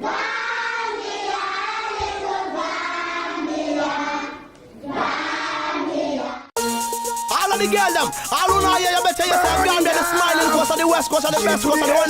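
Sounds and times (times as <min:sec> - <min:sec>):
choir singing long notes: 0:00.0 - 0:06.5.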